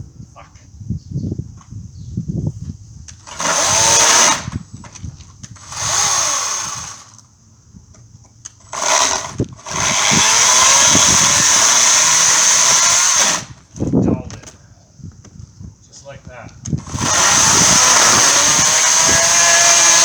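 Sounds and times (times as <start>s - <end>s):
battery chainsaw running: 3.2s - 4.6s, 5.6s - 7.2s, 8.6s - 13.6s, 16.8s - 20.0s.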